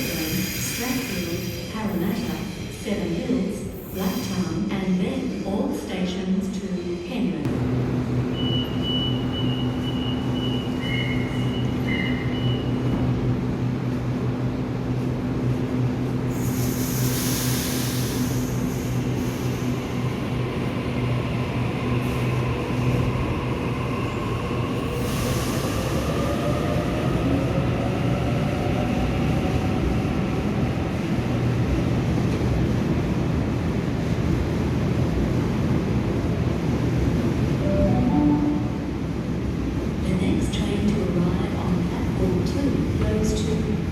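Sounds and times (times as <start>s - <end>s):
train low hum: 0.0s - 43.9s.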